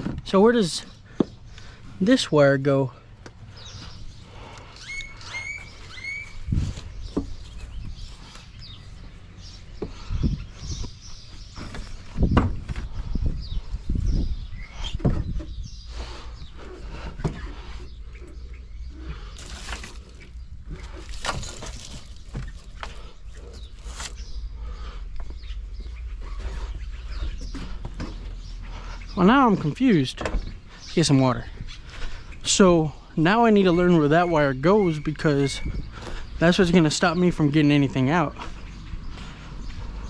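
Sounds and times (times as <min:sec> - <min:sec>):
bird chirping: 0:03.3 - 0:40.0
knocks clunks and rattles: 0:06.5 - 0:15.6, 0:26.4 - 0:32.6.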